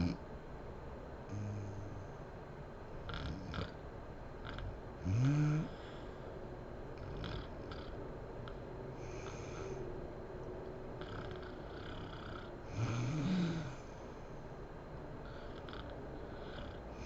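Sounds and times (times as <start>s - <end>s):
woman snoring: 1.3s - 2.0s, 4.5s - 5.9s, 11.0s - 13.9s, 15.2s - 17.0s.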